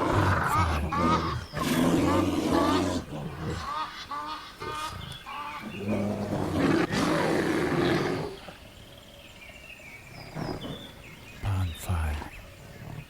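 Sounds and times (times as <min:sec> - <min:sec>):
polar bear growling and roaring: 0:00.0 - 0:03.7, 0:05.6 - 0:08.6.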